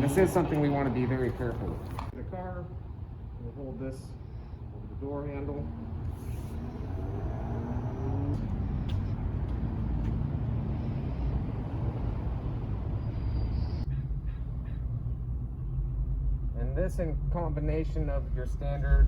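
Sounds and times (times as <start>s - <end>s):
low rumble: 6.0s - 19.0s.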